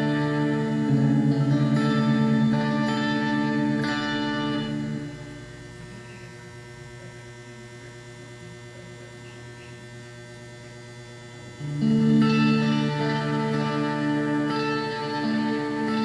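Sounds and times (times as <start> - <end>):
electric guitar notes ringing: 0.0 - 6.4, 11.5 - 16.0
electrical mains hum: 0.0 - 16.0.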